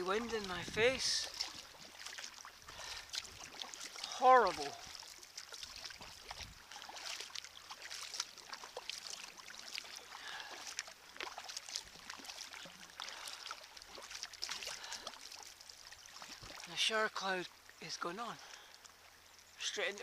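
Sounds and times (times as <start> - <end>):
heavy rain and hail on water: 0.0 - 15.4.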